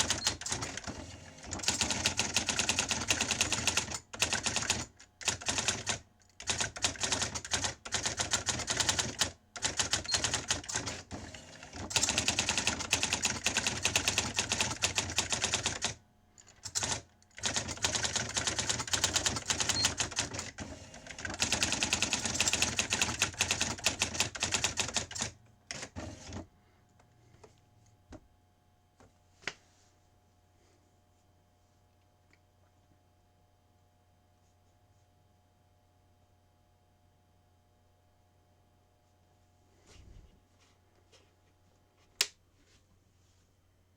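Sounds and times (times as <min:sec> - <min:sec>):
typewriter print wheel clicking: 0:01.5 - 0:11.1.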